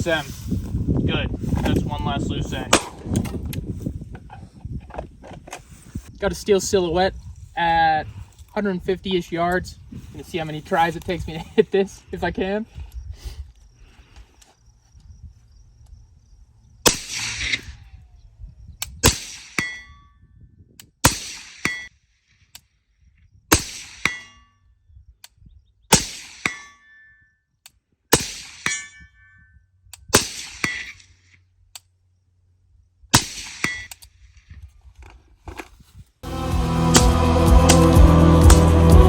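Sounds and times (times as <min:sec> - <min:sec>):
suppressed rifle shots: 0:16.9 - 0:17.8, 0:21.0 - 0:21.9, 0:23.5 - 0:24.3, 0:25.9 - 0:26.7, 0:28.1 - 0:28.8, 0:30.1 - 0:31.2, 0:33.1 - 0:34.0
steel target ringing clang: 0:19.3 - 0:20.2, 0:21.6 - 0:21.9, 0:23.6 - 0:24.6, 0:26.0 - 0:27.3, 0:28.2 - 0:29.5.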